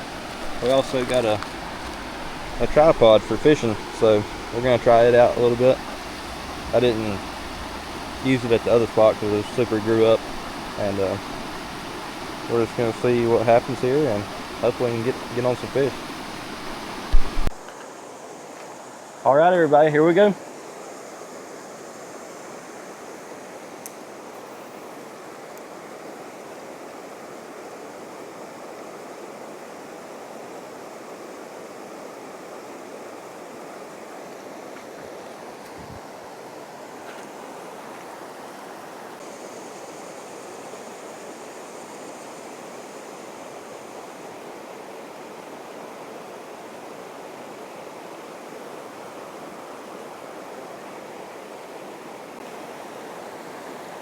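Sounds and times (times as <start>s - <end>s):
stream water rushing: 0.0s - 54.0s
brief low thump: 17.1s - 17.5s.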